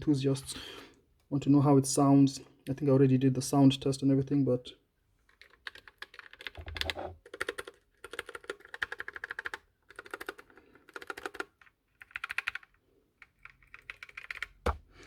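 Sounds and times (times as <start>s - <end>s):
mechanical keyboard typing: 5.3s - 14.7s.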